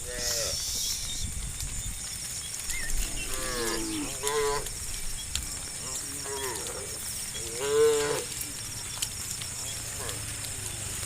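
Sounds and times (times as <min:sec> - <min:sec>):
cattle mooing: 0:03.1 - 0:04.7, 0:05.8 - 0:08.5.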